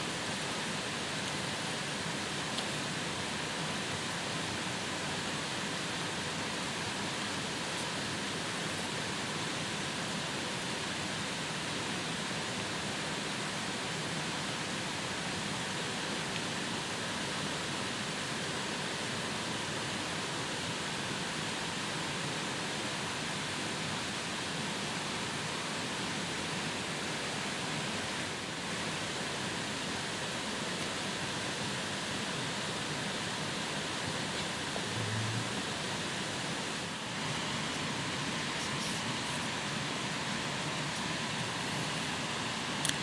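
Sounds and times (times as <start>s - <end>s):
steady rushing noise: 33.7s - 43.0s
brief low hum: 34.9s - 35.7s.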